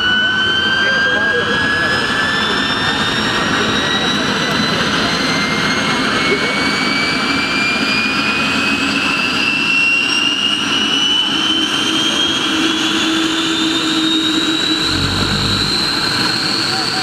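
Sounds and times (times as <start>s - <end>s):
helicopter turbine whine: 0.0s - 17.0s
engine rush: 13.4s - 17.0s.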